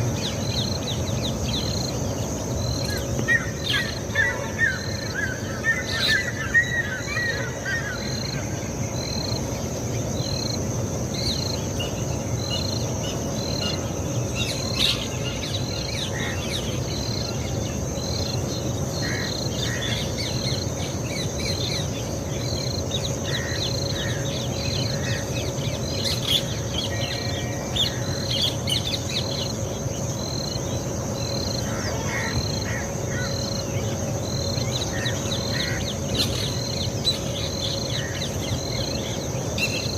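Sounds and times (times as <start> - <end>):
high insect drone: 0.0 - 39.9
birds chirping: 11.2 - 39.9.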